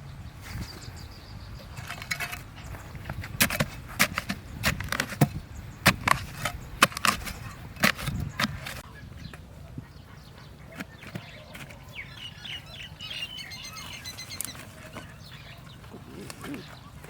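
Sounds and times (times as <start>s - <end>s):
blade chopping wood: 3.1s - 8.8s.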